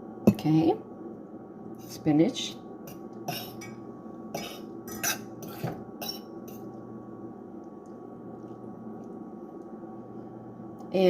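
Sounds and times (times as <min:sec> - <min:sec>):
low room hum: 0:00.0 - 0:11.0
dishes and utensils clattering: 0:04.4 - 0:06.6.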